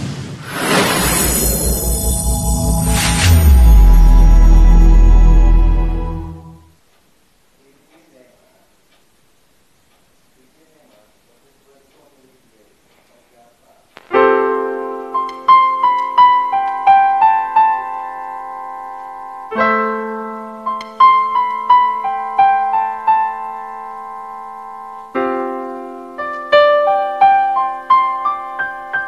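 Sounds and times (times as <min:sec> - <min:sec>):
slow piano chords and melody: 0:14.1 - 0:29.0.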